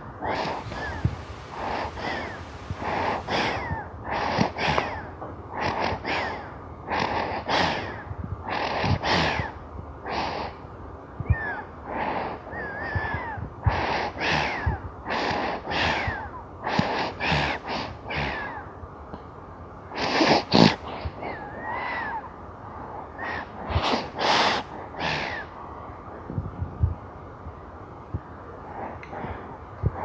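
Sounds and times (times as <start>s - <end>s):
baby snoring: 0.3s - 4.9s.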